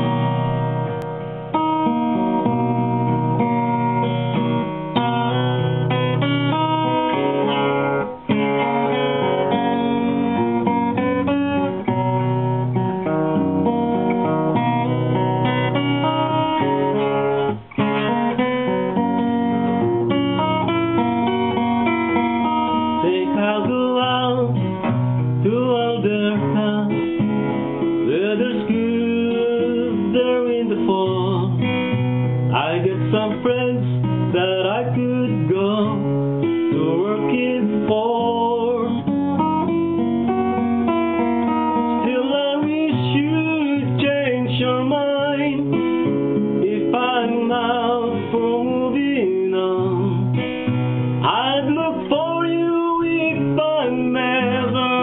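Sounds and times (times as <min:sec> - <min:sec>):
acoustic guitar strumming: 0:00.0 - 0:55.0
person singing: 0:04.9 - 0:06.4, 0:22.8 - 0:24.7, 0:25.4 - 0:27.1, 0:28.0 - 0:31.6, 0:36.7 - 0:39.1, 0:41.8 - 0:45.8, 0:46.6 - 0:50.4, 0:51.2 - 0:55.0.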